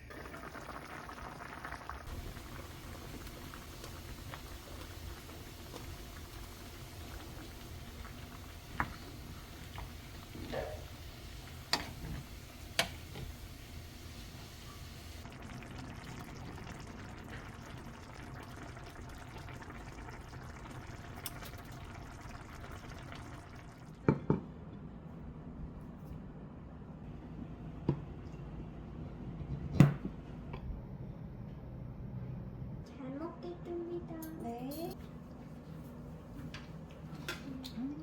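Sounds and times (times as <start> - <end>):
food bubbling in a pot: 0.0 - 24.1.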